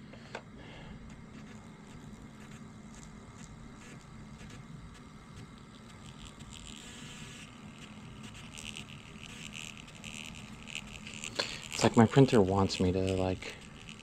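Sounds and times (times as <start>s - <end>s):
small printer buzzing: 0.0s - 14.0s.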